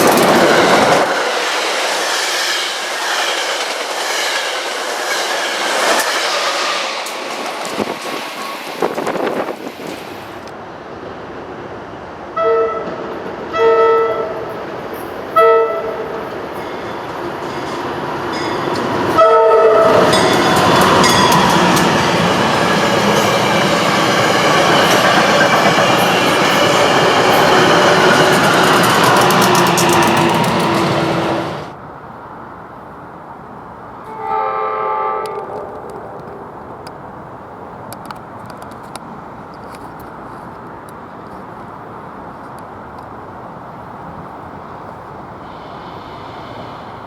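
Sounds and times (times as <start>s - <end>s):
train rumble: 0.0s - 47.0s
train air horn: 12.4s - 14.5s, 15.4s - 16.2s, 19.1s - 20.3s, 34.1s - 36.2s.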